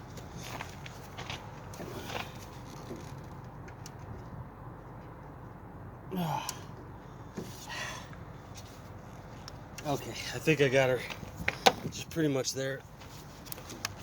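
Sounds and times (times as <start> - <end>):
man grunting with effort: 6.1 - 6.6
breathy exhale: 7.6 - 8.1.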